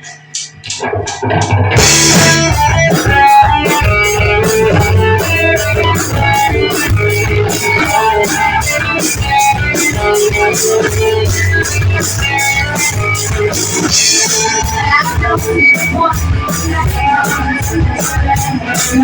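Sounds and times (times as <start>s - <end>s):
drum kit: 0.0s - 19.0s
electric guitar: 0.0s - 19.0s
bass guitar: 0.6s - 19.0s.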